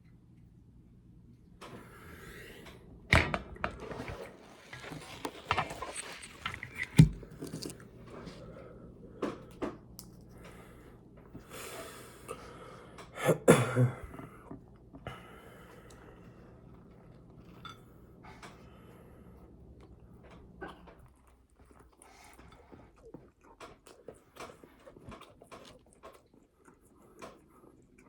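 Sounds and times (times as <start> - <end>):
food packaging rustling: 3.8 - 8.4.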